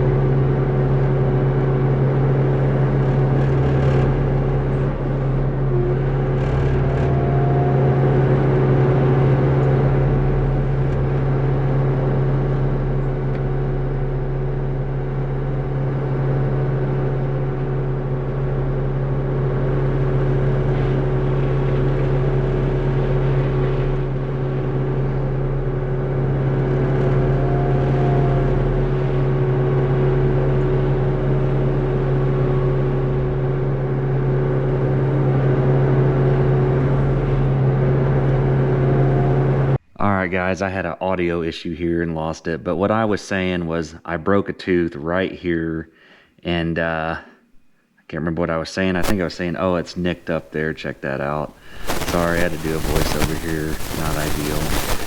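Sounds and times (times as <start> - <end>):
excavator diesel engine droning: 0.0 - 40.3.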